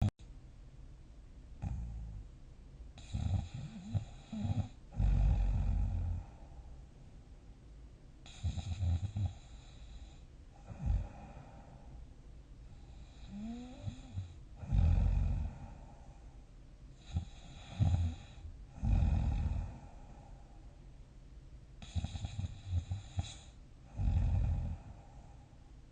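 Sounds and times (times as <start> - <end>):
person snoring: 3.0 - 6.4, 8.3 - 10.0, 10.6 - 11.8, 12.8 - 16.0, 17.0 - 20.3, 21.8 - 25.2
breathy hiss: 12.6 - 20.8, 21.8 - 25.6.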